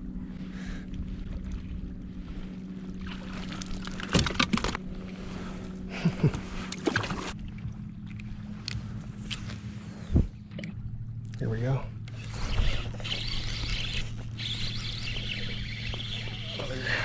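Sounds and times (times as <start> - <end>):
low hum: 0.0 - 17.0
water splashing and knocks: 3.0 - 4.8, 6.7 - 8.3.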